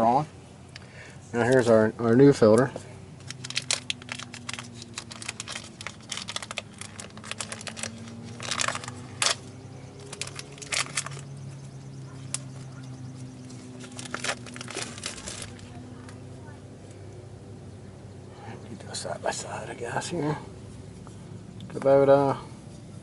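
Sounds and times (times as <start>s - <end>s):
steady low hum: 0.0s - 23.0s
packaging crinkling and clicking: 3.2s - 11.3s, 13.5s - 15.7s.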